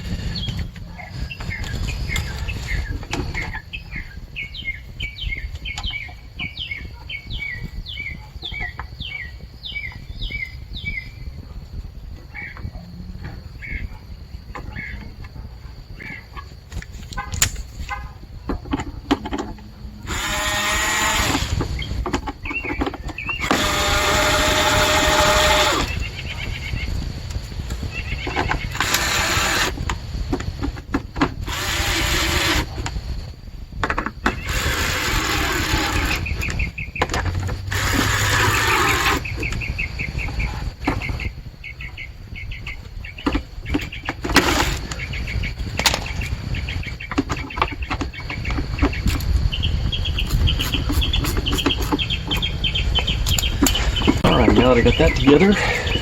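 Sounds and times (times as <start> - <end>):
birds chirping faintly: 0.0 - 56.0
plastic parts scraping and squeaking: 16.0 - 41.4, 42.8 - 56.0.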